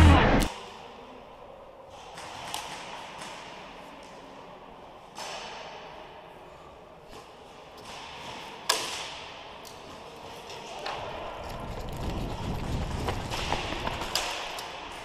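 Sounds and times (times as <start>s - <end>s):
low rumbling noise: 0.0s - 0.6s.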